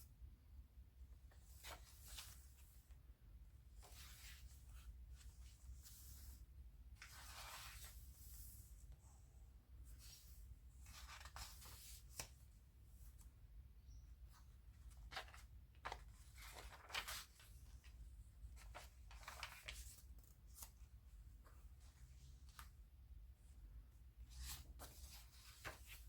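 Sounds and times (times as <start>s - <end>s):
paper pages rustling: 14.9s - 17.9s, 18.6s - 20.9s, 24.4s - 26.0s.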